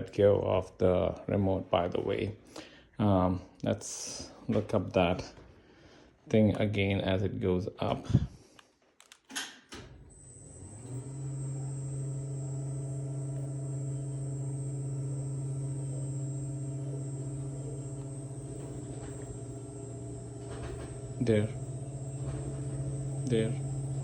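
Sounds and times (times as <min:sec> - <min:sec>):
lift clicking: 0:10.0 - 0:24.0
lift motor humming and whining: 0:10.0 - 0:24.0.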